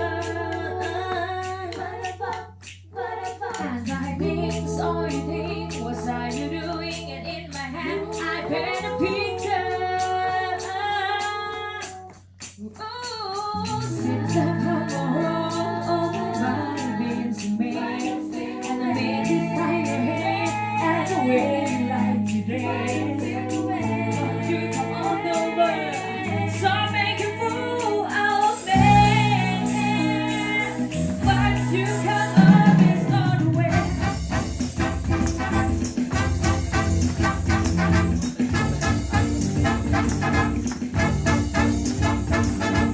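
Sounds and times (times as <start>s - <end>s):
band playing: 28.9s - 42.9s.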